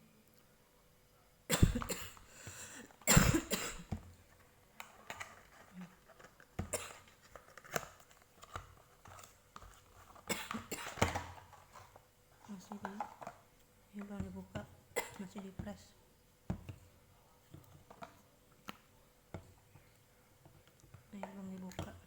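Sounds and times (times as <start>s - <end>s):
person coughing: 1.5s - 3.9s, 6.7s - 7.1s, 10.3s - 11.1s, 15.0s - 15.3s
bottle box clicks and rustles: 4.4s - 13.5s.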